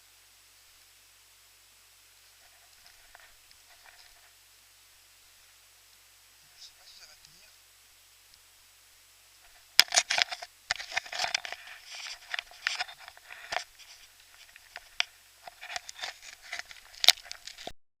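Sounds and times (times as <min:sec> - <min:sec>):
muffled handling rustling and clicking: 0:02.3 - 0:04.3, 0:09.4 - 0:17.8.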